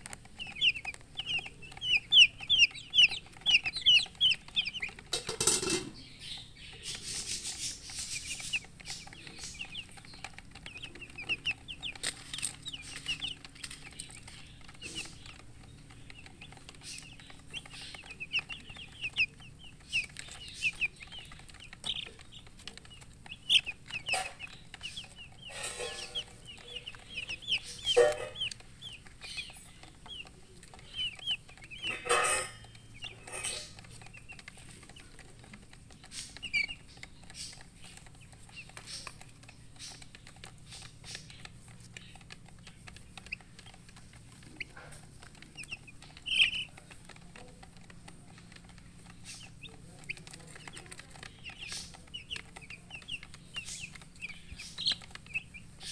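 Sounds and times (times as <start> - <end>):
baby chicks peeping: 0.0 - 55.9
hen clucking: 0.0 - 55.9
rustling: 0.0 - 55.9.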